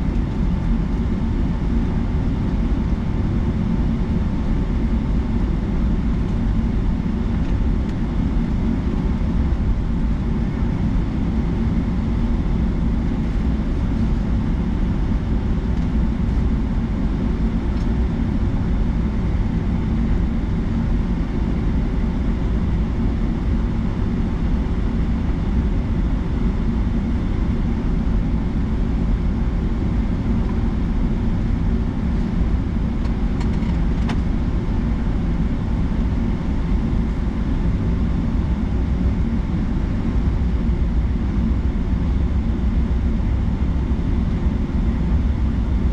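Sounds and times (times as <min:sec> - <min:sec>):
jet engine rumble: 0:00.0 - 0:45.9.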